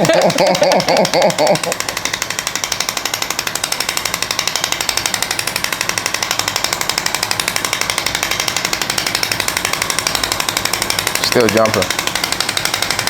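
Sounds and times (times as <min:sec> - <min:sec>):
shockwave device clicking pulses: 0:00.0 - 0:13.0.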